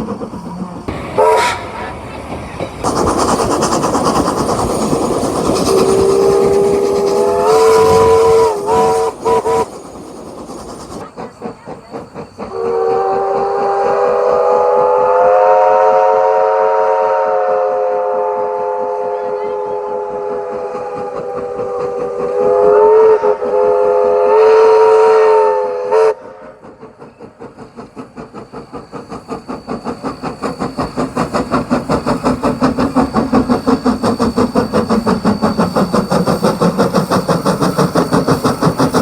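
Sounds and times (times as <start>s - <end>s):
steam hissing: 0.0s - 39.0s
chime steam whistle: 0.9s - 2.1s, 4.8s - 10.0s, 11.3s - 26.6s, 28.1s - 39.0s.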